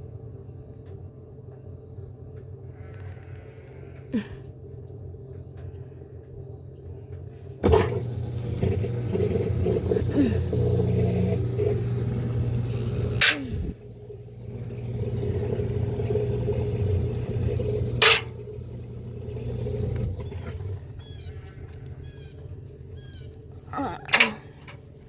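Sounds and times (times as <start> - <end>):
washing machine humming: 0.0 - 25.0.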